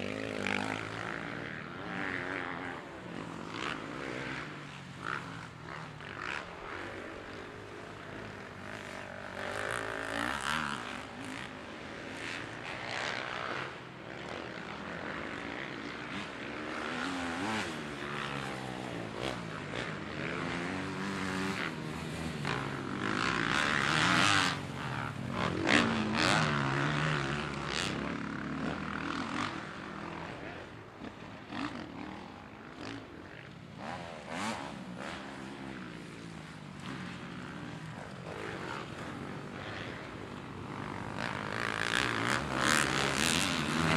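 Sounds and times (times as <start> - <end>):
motocross engines revving: 0.0 - 43.9.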